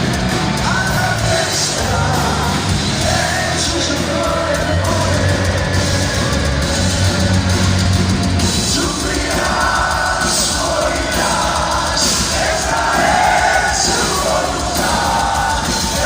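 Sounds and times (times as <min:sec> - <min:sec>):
bass: 0:00.0 - 0:16.0
distorted electric guitars: 0:00.0 - 0:16.0
drums: 0:00.0 - 0:16.0
person singing: 0:00.4 - 0:07.7.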